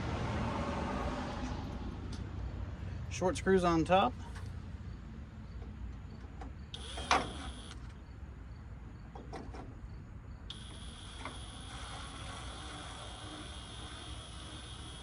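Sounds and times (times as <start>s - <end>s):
drill whining: 10.5s - 15.0s.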